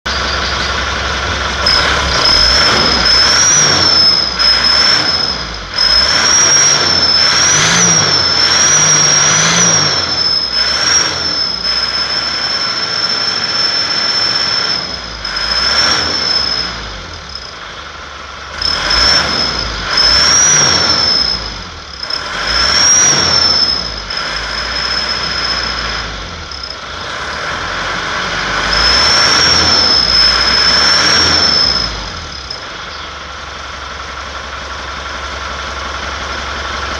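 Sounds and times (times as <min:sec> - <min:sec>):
diesel engine revving: 0:00.1 - 0:36.9
turbo whistle: 0:01.6 - 0:17.6, 0:18.6 - 0:27.1, 0:28.6 - 0:33.1.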